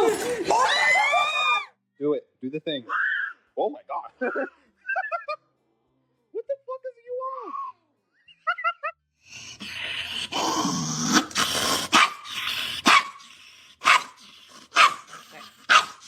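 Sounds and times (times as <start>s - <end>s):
dog yipping and barking: 11.9s - 13.2s, 13.8s - 16.0s.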